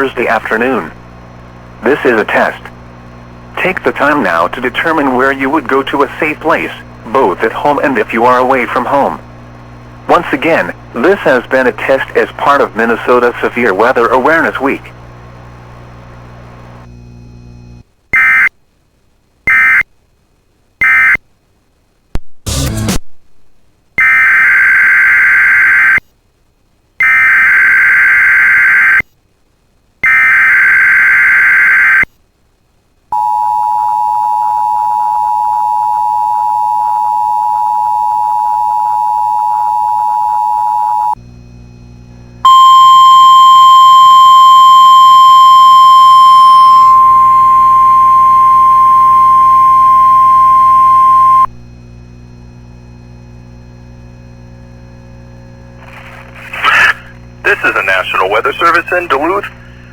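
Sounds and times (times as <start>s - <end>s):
low hum: 0.0s - 17.8s, 33.2s - 59.9s
steady warning alarm tone: 33.2s - 41.2s, 42.4s - 51.5s.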